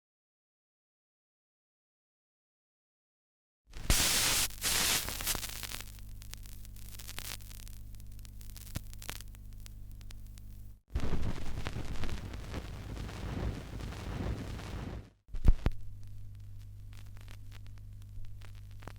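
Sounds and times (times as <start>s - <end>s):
steady electrical hum: 3.8s - 18.9s
television static crackling: 3.8s - 18.9s.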